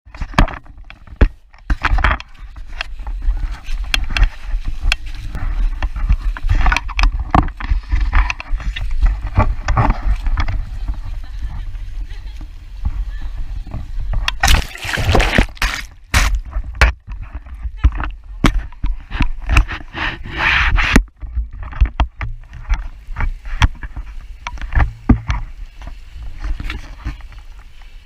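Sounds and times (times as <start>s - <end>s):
water slapping against boat hull: 14.2s - 17.2s.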